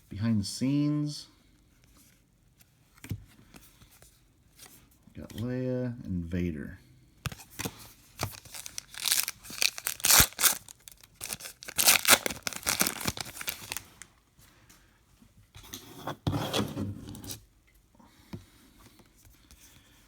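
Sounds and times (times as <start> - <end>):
wrapper tearing and crinkling: 7.3 - 14.1.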